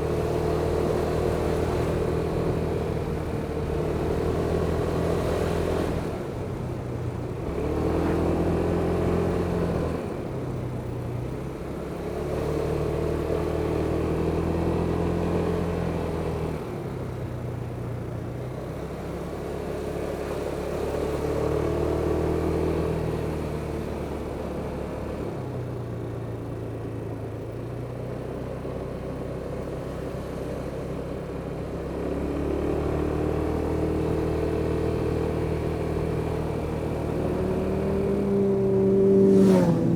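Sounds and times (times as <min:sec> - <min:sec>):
rushing wind: 0:38.8 - 0:39.9.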